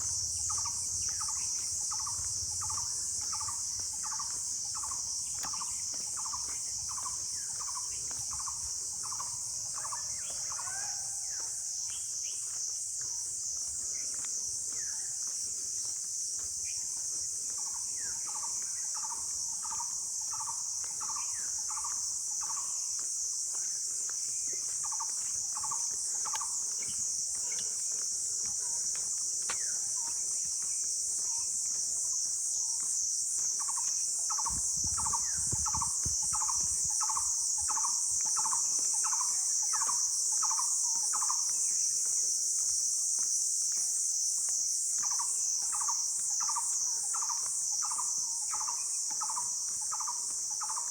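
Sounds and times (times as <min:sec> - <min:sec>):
insects buzzing: 0:00.0 - 0:50.9.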